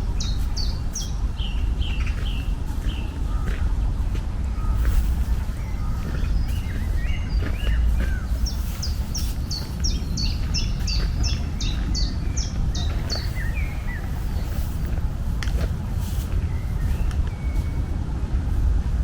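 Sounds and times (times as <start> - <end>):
small birds chirping: 0.0 - 18.8
steady low rumble: 0.0 - 19.0.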